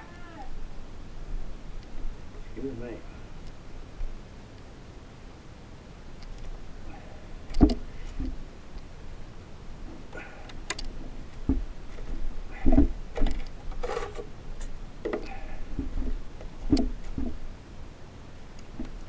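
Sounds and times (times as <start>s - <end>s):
hard plastic clicks and knocks: 7.5s - 8.4s, 15.0s - 17.4s.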